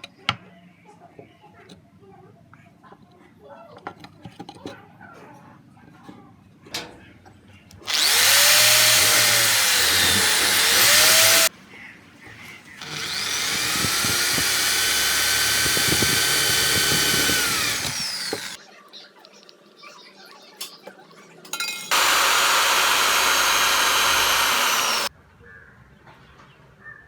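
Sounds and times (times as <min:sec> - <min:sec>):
power tool running: 0:07.9 - 0:11.5, 0:12.8 - 0:18.6, 0:21.9 - 0:25.1.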